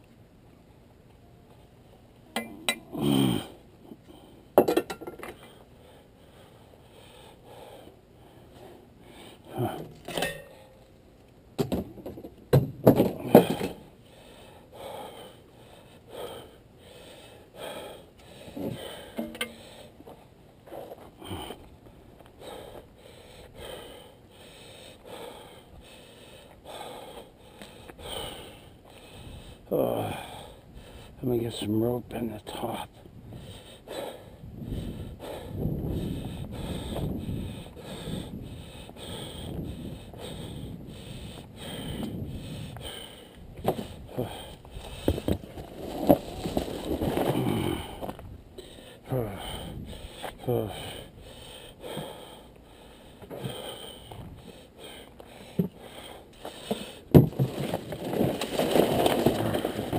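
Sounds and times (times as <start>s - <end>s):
hard objects clinking and scraping: 57.3s - 59.9s.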